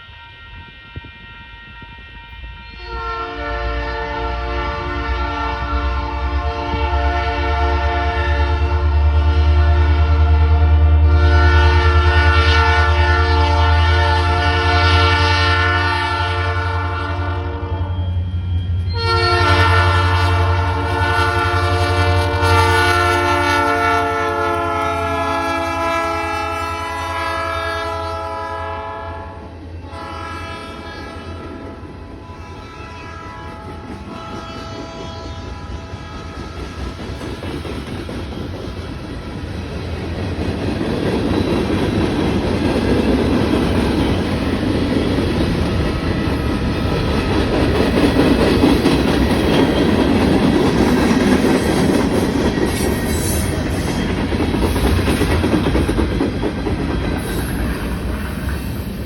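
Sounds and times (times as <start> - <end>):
locomotive horn blasts: 0.0 - 18.1, 18.9 - 36.6.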